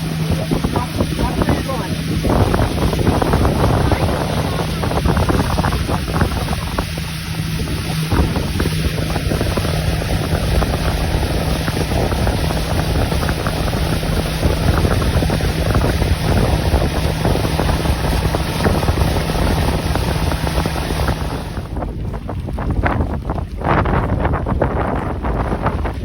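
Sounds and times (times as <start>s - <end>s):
boat motor humming: 0.0s - 26.0s
wind buffeting microphone: 0.0s - 26.0s.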